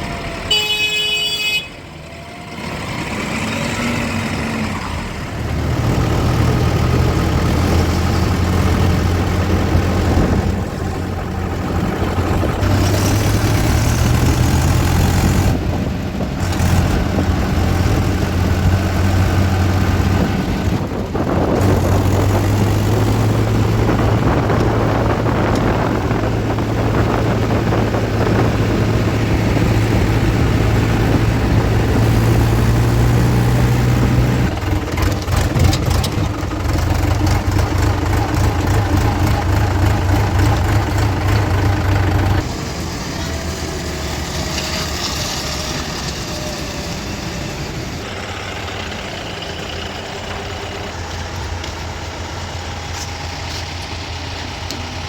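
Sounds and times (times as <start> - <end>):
diesel engines droning: 0.0 - 55.0
knocks and clatter: 34.5 - 42.5.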